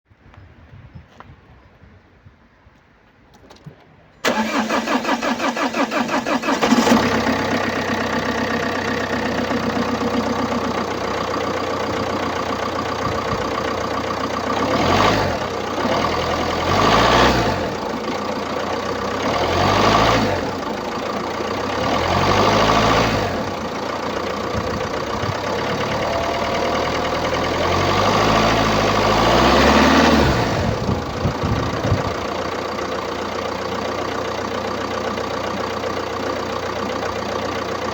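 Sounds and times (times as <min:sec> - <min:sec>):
starter motor cranking: 0:04.2 - 0:08.2
diesel engine idling and revving: 0:04.2 - 0:37.9.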